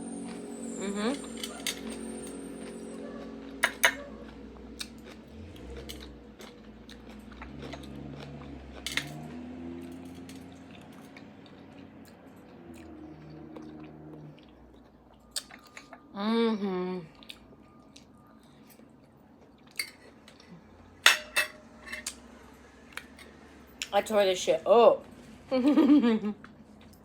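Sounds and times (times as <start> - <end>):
chewing: 0.2 - 16.2, 17.1 - 20.8
cutlery clinking on plate: 19.7 - 20.1, 21.1 - 22.2.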